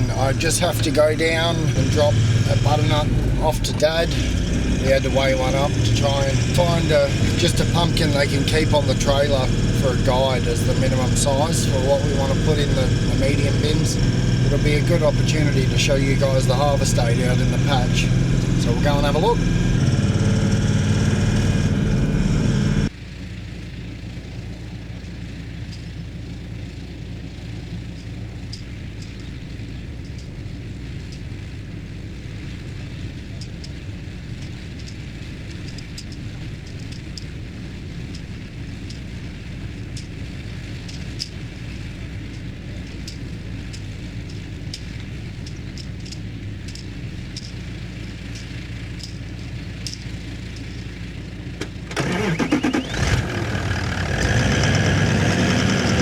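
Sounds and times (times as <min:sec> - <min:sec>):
vehicle engine rumbling: 0:00.0 - 0:56.0
faint clicks: 0:27.9 - 0:30.4, 0:38.0 - 0:56.0.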